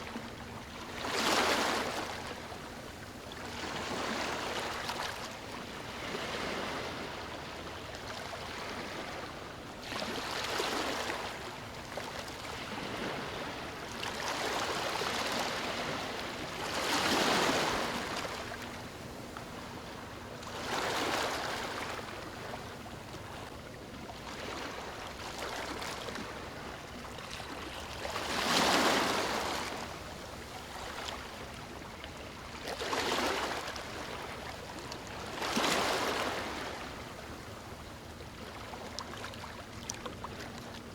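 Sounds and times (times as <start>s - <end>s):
ocean waves breaking: 8.3s - 23.5s, 24.2s - 37.4s.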